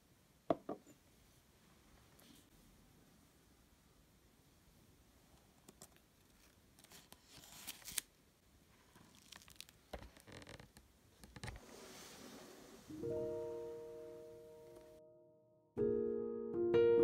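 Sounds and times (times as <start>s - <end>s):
faint rustling and crinkling: 1.2s - 2.8s, 5.2s - 13.0s.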